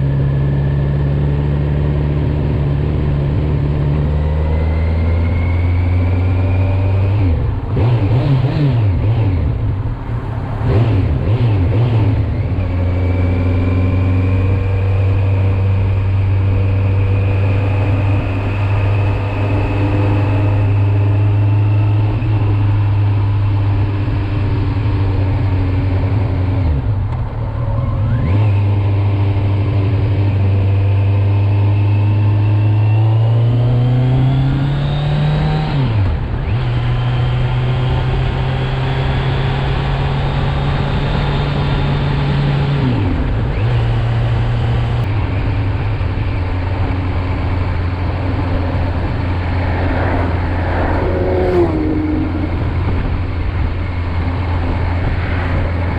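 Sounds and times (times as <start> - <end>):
motorcycle engine running: 39.3 - 55.9.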